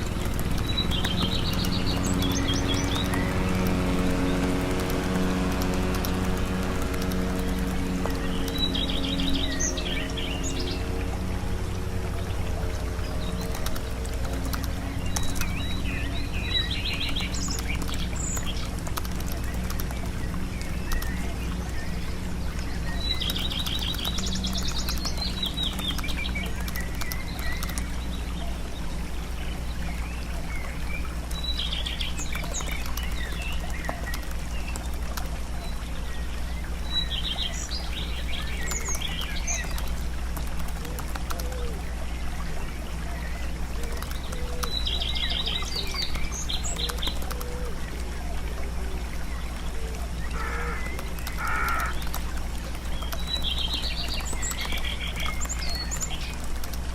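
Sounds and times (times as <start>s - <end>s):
small birds chirping: 0.0s - 56.9s
steady low hum: 0.0s - 56.9s.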